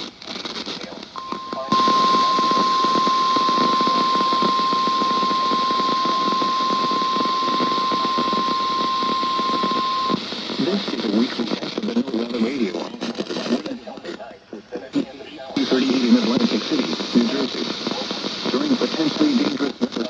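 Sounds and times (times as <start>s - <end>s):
radio hiss: 0.0s - 20.0s
warning alarm tone: 1.2s - 10.2s.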